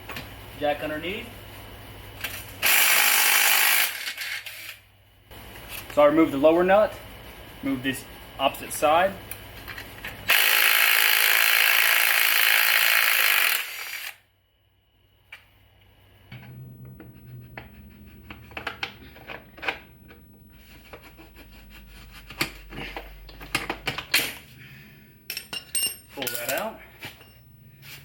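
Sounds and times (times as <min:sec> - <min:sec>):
power tool running: 0:02.6 - 0:04.2, 0:10.3 - 0:14.2
low hum: 0:14.4 - 0:26.2.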